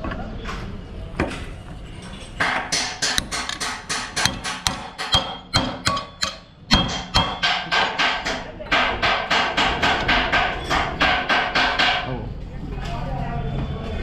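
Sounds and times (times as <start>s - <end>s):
hammer striking steel: 2.4s - 12.1s.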